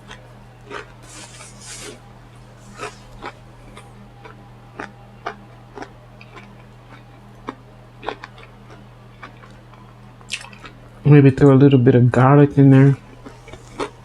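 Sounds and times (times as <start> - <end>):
chewing clicks and smacks: 0.0 - 1.0, 2.8 - 10.8, 13.0 - 14.0
steady low hum: 0.0 - 14.0.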